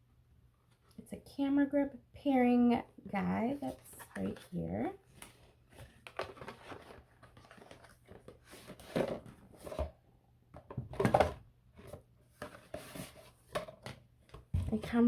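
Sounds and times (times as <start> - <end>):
packaging rustling and crinkling: 5.1 - 9.9.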